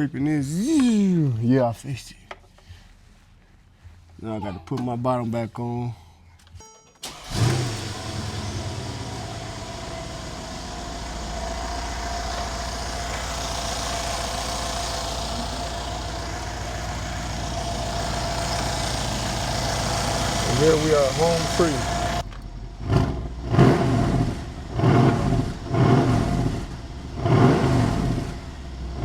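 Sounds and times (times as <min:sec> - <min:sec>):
car engine idling: 0:07.0 - 0:29.0.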